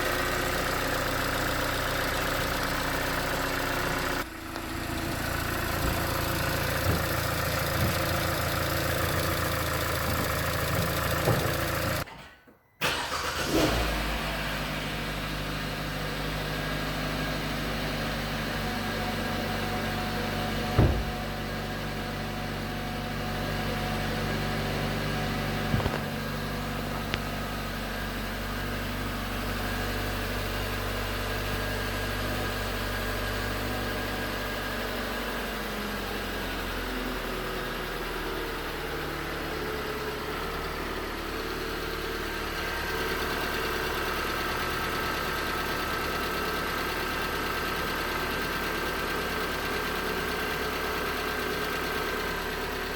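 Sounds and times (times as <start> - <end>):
car engine knocking: 0.1 - 12.1, 19.0 - 22.0, 25.6 - 30.8.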